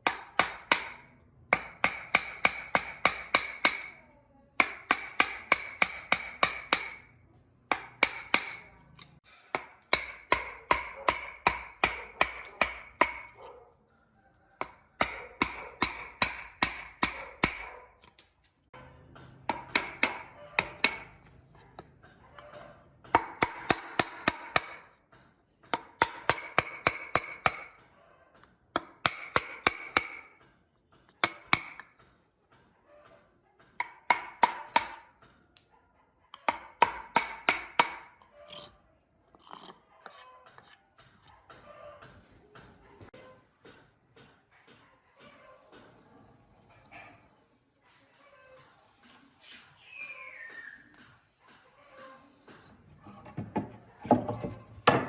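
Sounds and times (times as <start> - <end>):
hammer striking metal: 7.7 - 13.3.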